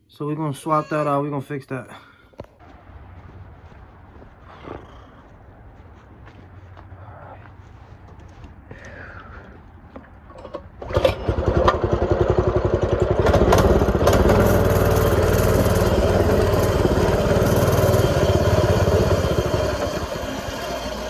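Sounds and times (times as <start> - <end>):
small two-stroke engine running: 10.8 - 21.0.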